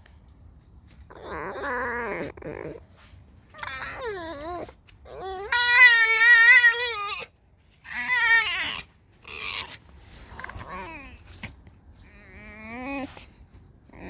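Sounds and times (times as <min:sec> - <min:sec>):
fox squeaky whining: 0:03.5 - 0:11.4.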